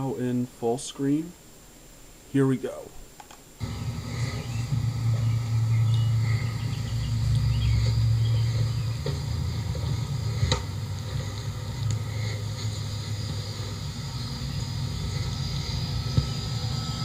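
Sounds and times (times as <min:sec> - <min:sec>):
faint insect chirping: 0:00.2 - 0:17.0
heat pump humming: 0:03.6 - 0:17.0.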